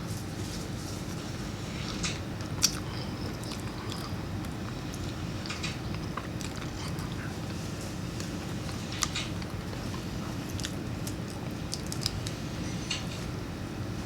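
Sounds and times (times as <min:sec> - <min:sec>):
person chewing boiled peanuts: 0:02.4 - 0:07.6, 0:08.2 - 0:12.4.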